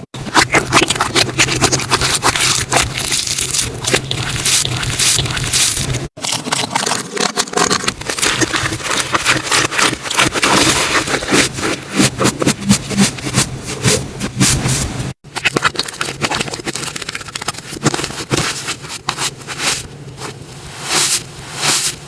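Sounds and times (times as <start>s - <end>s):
slime squished by hand: 0.2s - 6.1s.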